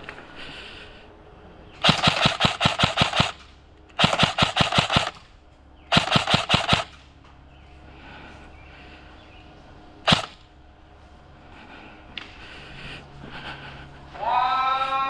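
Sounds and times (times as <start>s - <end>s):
airsoft gun automatic bursts: 1.8s - 5.3s, 5.9s - 7.1s, 10.0s - 10.5s.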